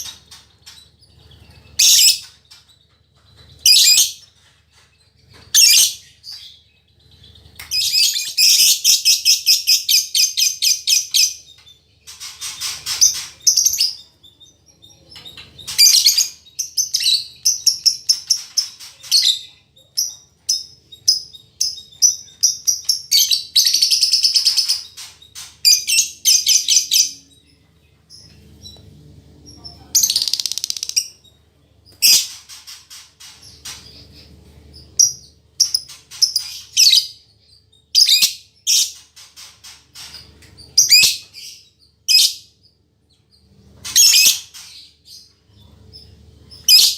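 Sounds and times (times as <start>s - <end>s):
lovebird chattering: 30.0s - 31.2s.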